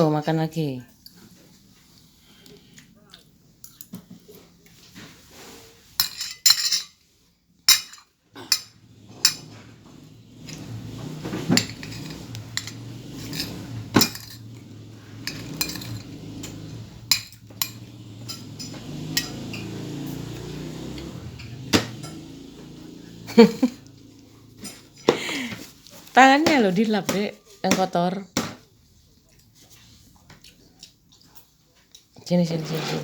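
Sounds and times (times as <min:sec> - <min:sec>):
cutlery clinking against dishes: 0:06.0 - 0:07.0, 0:07.7 - 0:22.2.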